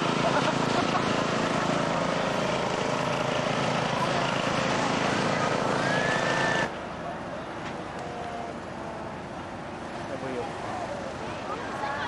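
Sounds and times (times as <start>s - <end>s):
engine revving whine: 0.0s - 6.8s
lawn mower engines running: 0.0s - 12.0s.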